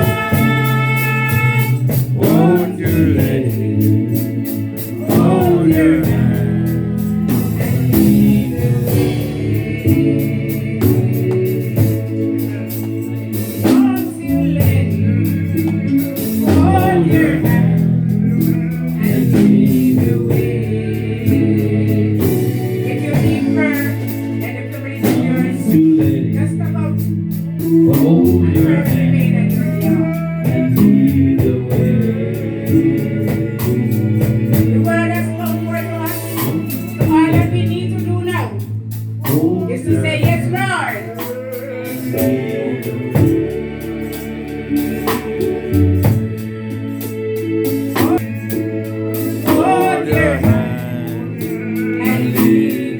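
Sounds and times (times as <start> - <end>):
person singing: 0.0 - 26.3, 47.8 - 52.9
guitar: 0.0 - 52.9
held bass notes: 0.0 - 52.9
steady drum beat: 0.0 - 52.9.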